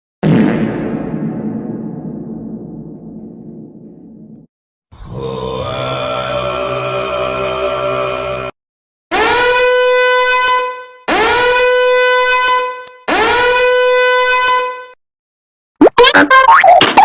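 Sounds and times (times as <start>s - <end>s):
horn blasts: 9.1s - 15.0s.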